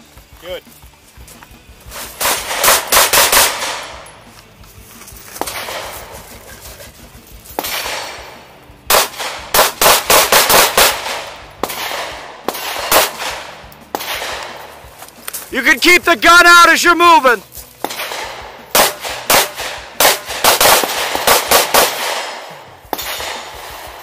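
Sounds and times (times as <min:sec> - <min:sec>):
handgun shots with echo: 0:02.0 - 0:04.1, 0:05.4 - 0:06.3, 0:07.6 - 0:14.8, 0:17.8 - 0:24.0.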